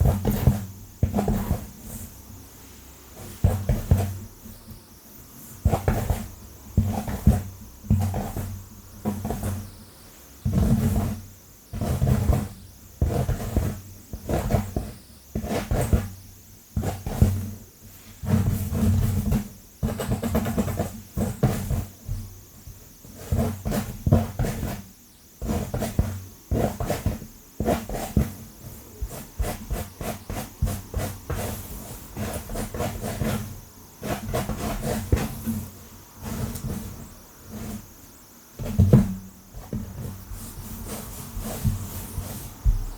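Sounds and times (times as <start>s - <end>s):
fingernails scratching through hair: 29.1s - 38.0s, 39.6s - 42.9s.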